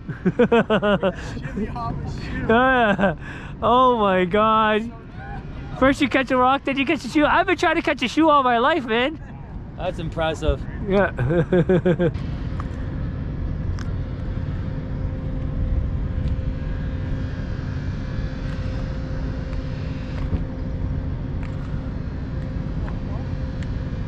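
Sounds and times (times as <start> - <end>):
boat engine running: 0.0 - 24.0.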